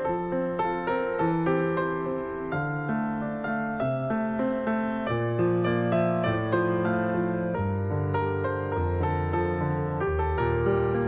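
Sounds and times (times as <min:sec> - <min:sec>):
soft piano music: 0:00.0 - 0:11.0.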